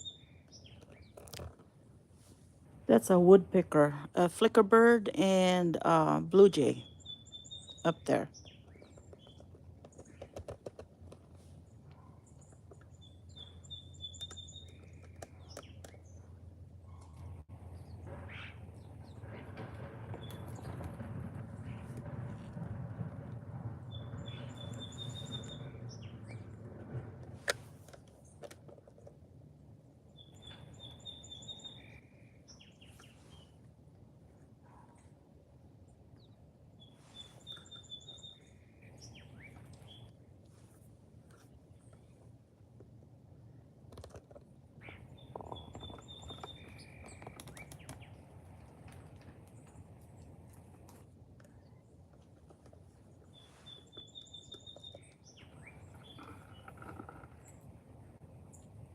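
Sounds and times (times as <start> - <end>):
faint outdoor background: 0.0 - 58.9
songbird trilling: 6.7 - 9.4, 23.9 - 26.4, 30.2 - 33.1, 36.8 - 40.1
low background rumble: 10.9 - 28.4.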